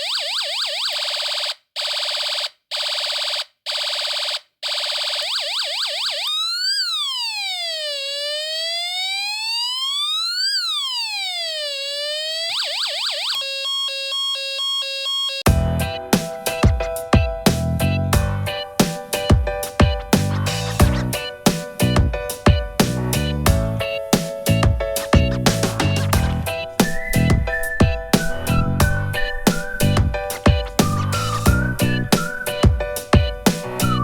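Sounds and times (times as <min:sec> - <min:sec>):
electronic siren yelp and wail: 0:00.0 - 0:15.5, 0:26.3 - 0:32.5, 0:33.7 - 0:34.0
stepped electronic beeps: 0:25.0 - 0:32.7.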